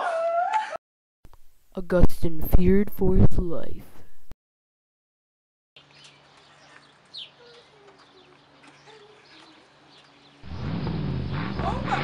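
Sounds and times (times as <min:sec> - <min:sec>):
birds chirping: 0:05.8 - 0:12.0.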